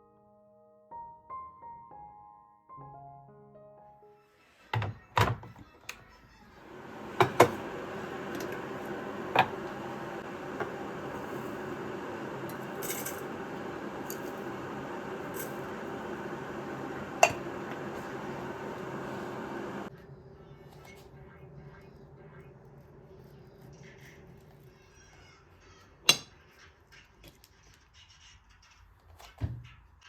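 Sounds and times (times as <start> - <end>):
kitchen appliance humming: 6.5 - 19.9.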